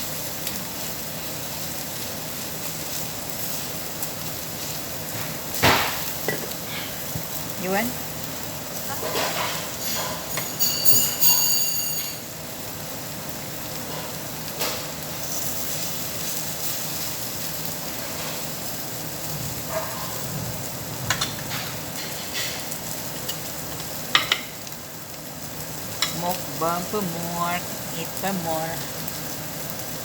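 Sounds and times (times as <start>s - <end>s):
meat sizzling on grill: 0.0s - 30.0s
bright metallic ring: 9.8s - 12.3s.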